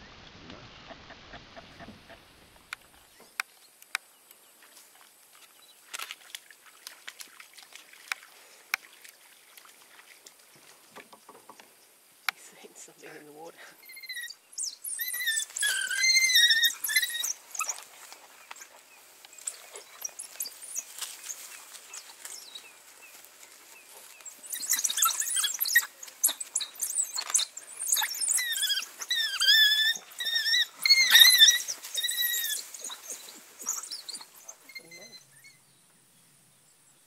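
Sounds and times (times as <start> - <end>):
pups squeaking: 13.8 - 35.6
rustling and pattering: 16.7 - 34.8.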